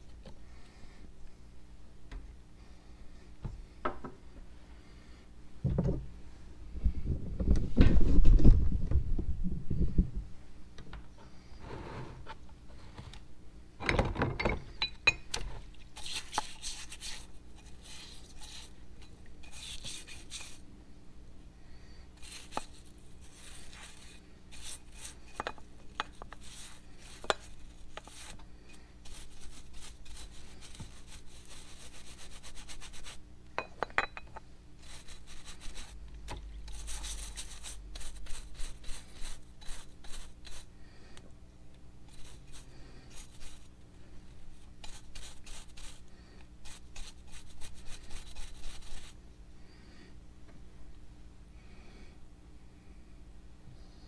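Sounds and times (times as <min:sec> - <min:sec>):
metal scraping with light clinks: 0:22.2 - 0:31.2, 0:33.6 - 0:36.0.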